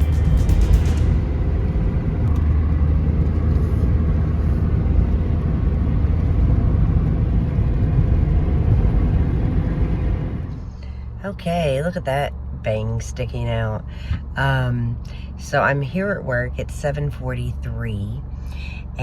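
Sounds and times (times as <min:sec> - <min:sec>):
car engine and road noise: 0:00.0 - 0:19.0.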